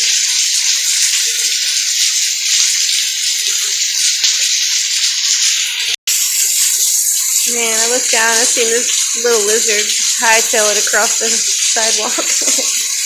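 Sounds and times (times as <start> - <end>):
heavy rain pouring: 6.1 - 13.0.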